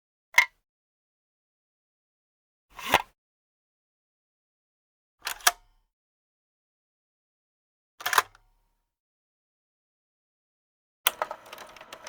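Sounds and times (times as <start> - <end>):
projector mechanical clack: 11.1 - 12.0
projector mechanism click: 11.1 - 12.0.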